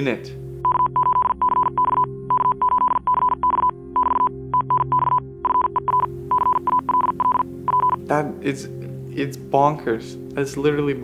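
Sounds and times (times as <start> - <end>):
soft background music: 0.0 - 11.0
morse code beeps: 0.6 - 8.0.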